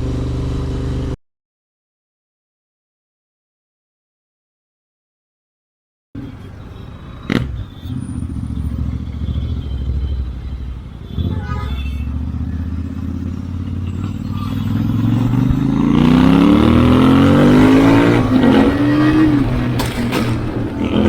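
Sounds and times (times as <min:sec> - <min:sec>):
motorcycle engine accelerating: 0:00.0 - 0:01.2, 0:07.1 - 0:21.0
exhaust cracks: 0:12.0 - 0:21.0.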